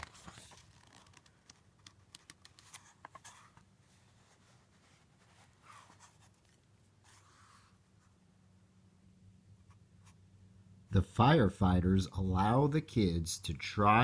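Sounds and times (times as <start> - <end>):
book pages turning: 0.0 - 7.8.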